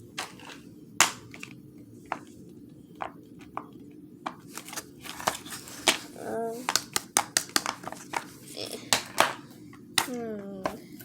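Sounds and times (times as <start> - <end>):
low room hum: 0.0 - 11.0
plastic fidget toys clicking: 6.6 - 8.3.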